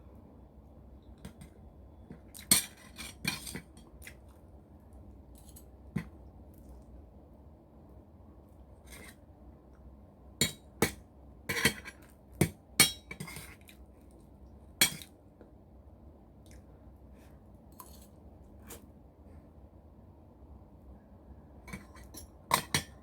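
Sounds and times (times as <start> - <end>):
cutlery clinking on a plate: 21.7 - 23.0.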